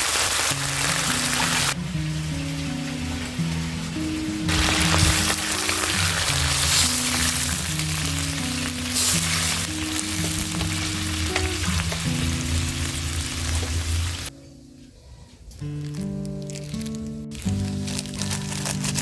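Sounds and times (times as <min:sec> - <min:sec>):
food sizzling in oil: 0:00.0 - 0:02.6, 0:03.9 - 0:14.3
background music: 0:00.5 - 0:19.0.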